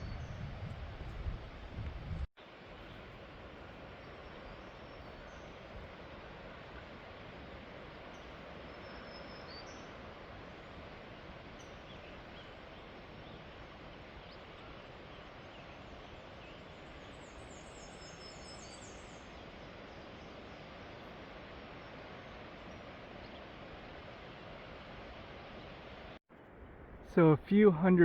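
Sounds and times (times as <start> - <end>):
river rushing far below: 2.4 - 26.2
faint high bird calls: 8.0 - 10.7.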